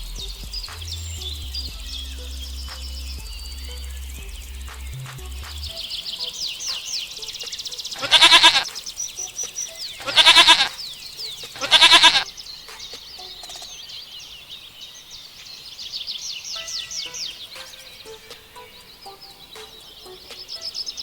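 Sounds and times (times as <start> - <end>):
birdsong chirps: 0.0 - 21.0
goat bleating: 8.0 - 8.6, 10.0 - 10.7, 11.6 - 12.2.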